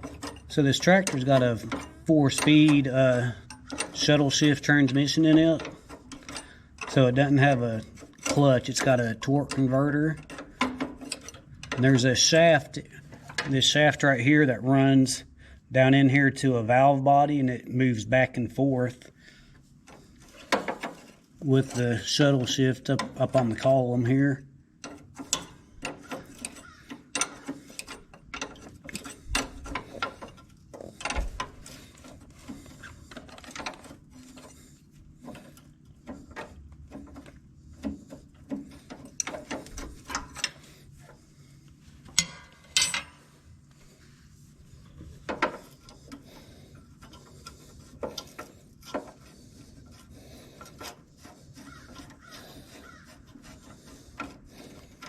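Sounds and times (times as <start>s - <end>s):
wrench clicking on metal bolts: 0.0s - 12.3s, 24.8s - 34.6s, 35.3s - 40.7s, 42.1s - 43.2s, 45.2s - 55.0s.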